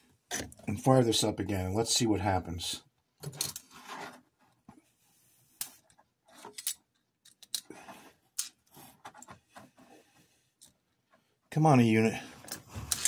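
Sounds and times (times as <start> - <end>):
toy train parts clicking: 6.4 - 7.7.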